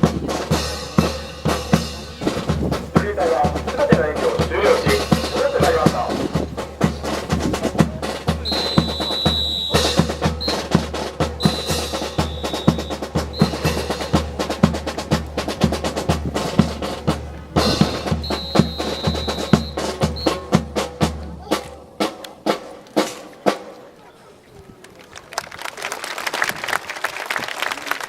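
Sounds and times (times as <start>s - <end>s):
bass drum beat: 0.0s - 22.4s
rapid snare drumming: 0.0s - 23.8s.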